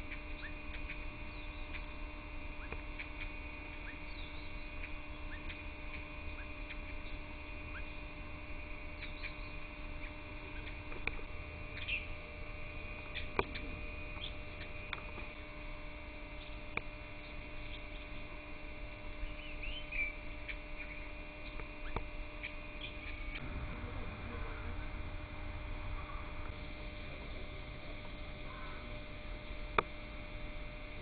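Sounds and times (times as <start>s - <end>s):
bird chirps: 0.0s - 8.1s, 8.9s - 10.8s, 11.7s - 12.2s, 13.0s - 14.8s, 16.4s - 18.3s, 19.1s - 23.4s
steady hum: 0.0s - 31.0s.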